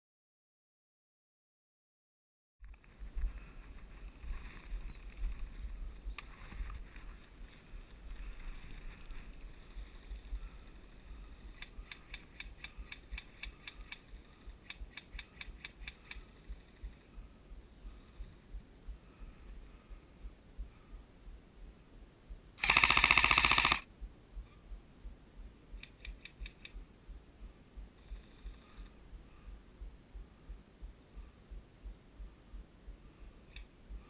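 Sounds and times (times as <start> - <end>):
wind rumble on microphone: 2.6 - 11.6
airsoft gun firing bursts: 22.6 - 23.9.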